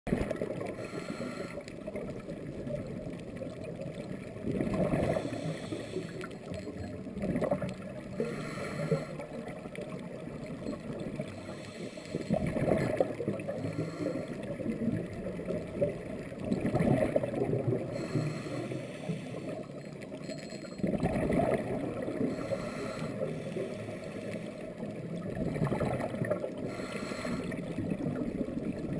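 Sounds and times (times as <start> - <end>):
gurgling exhaled bubbles: 0.1 - 19.8, 20.8 - 23.9, 24.6 - 28.9
diver breathing through regulator: 0.7 - 1.8, 5.0 - 6.5, 8.2 - 9.4, 11.3 - 12.5, 13.4 - 14.5, 17.8 - 19.8, 22.2 - 24.9, 26.6 - 27.7.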